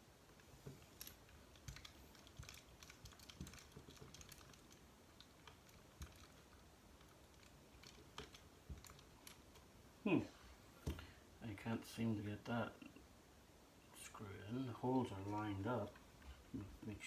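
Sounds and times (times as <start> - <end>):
plastic parts clicking and tapping: 0.3 - 9.7.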